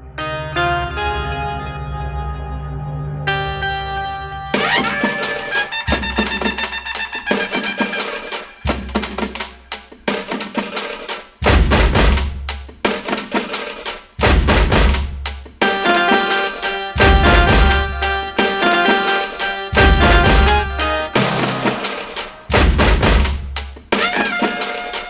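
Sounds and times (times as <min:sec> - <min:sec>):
drums and percussion: 0:04.6 - 0:25.0
deep bass beat: 0:11.4 - 0:12.9, 0:14.2 - 0:15.6, 0:17.0 - 0:18.4, 0:19.7 - 0:21.7, 0:22.5 - 0:24.0.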